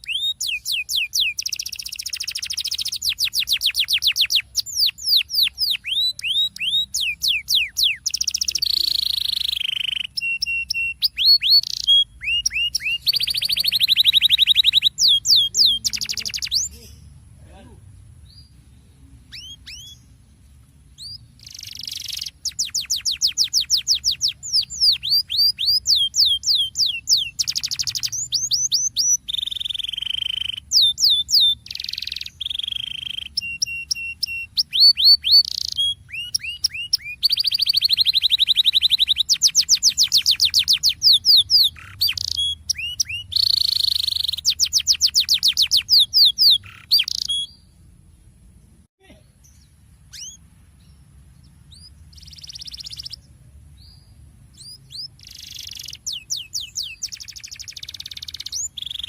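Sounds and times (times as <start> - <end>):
canary singing trills: 0.0 - 47.8, 48.6 - 59.0.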